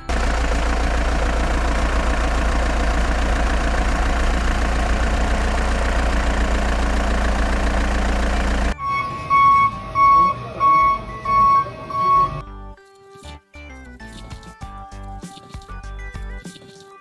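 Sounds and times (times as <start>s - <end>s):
large engine idling: 0.0s - 12.4s.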